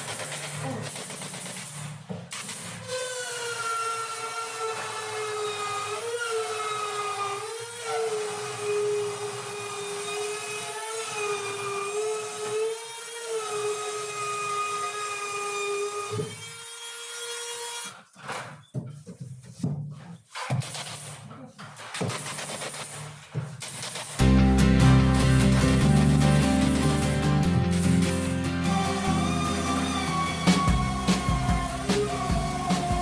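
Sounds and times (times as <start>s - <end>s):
electric power tool whining: 24.8s - 33.0s.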